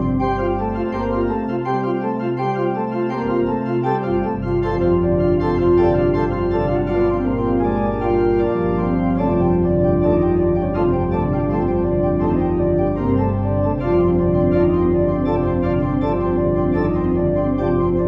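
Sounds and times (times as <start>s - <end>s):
deep bass organ notes: 0.0s - 18.0s
organ chords: 0.0s - 18.0s.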